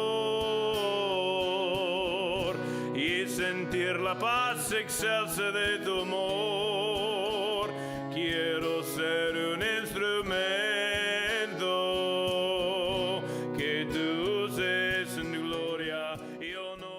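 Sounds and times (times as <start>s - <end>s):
guitar accompaniment: 0.0s - 16.9s
person singing gospel song: 0.0s - 16.9s.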